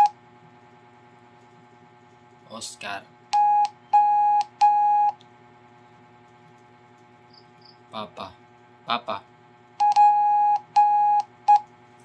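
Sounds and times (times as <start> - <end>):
morse code beeps: 3.4 - 5.2, 9.8 - 11.6.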